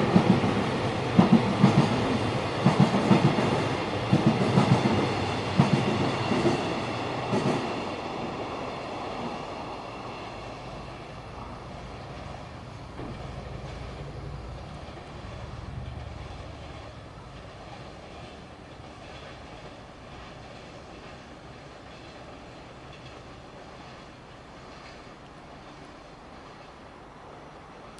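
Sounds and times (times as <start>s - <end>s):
train wagons clattering over rails: 0.0s - 27.0s
train rumble: 0.0s - 27.9s.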